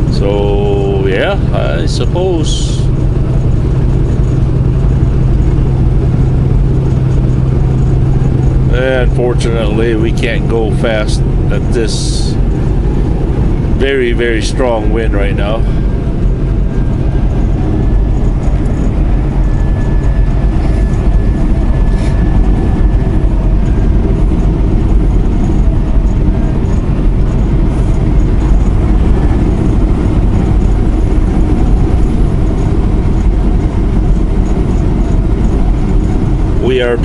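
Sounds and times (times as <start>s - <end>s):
crosswind buffeting: 0.0s - 37.0s
diesel engine: 0.0s - 37.0s
road noise: 0.0s - 37.0s.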